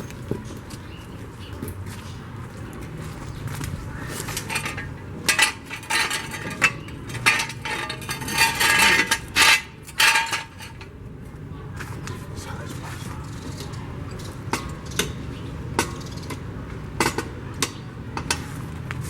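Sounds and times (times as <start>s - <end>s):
metal tools clanking: 3.9s - 11.0s, 12.9s - 16.4s.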